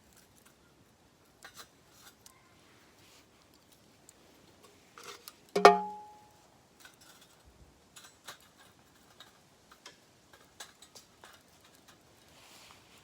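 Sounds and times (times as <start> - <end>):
metal clink ringing: 5.6 - 6.3.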